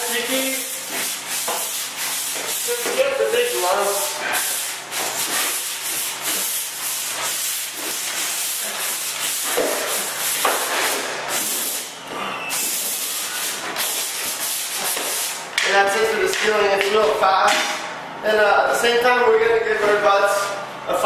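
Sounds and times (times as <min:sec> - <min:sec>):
sandpaper rasping back and forth: 0:00.0 - 0:11.9, 0:12.7 - 0:15.4.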